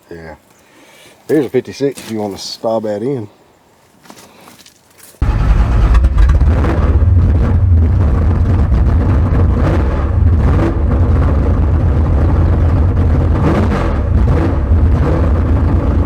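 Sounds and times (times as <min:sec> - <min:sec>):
car engine rumbling: 0:05.2 - 0:16.0.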